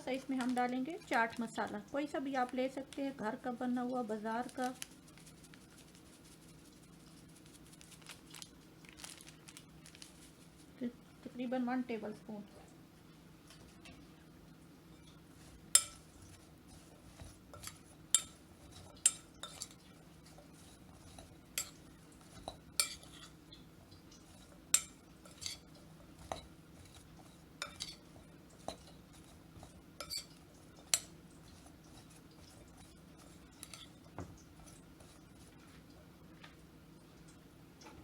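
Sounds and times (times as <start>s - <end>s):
metal spoon clinking against bowl: 15.7s - 16.0s, 17.5s - 19.8s, 21.0s - 23.3s, 24.3s - 27.0s, 27.6s - 34.0s.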